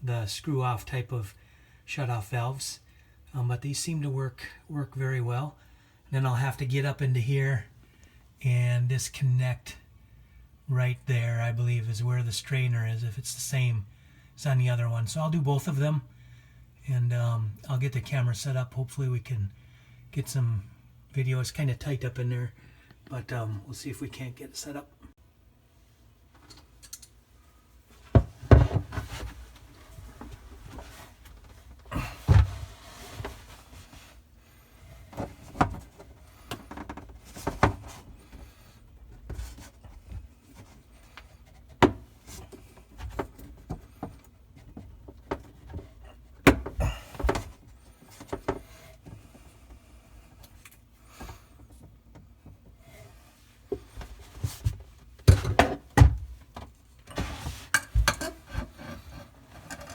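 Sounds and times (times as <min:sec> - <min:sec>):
knocks and bumps in cabinet: 0:28.1 - 0:29.4, 0:31.9 - 0:32.8, 0:54.5 - 0:58.2.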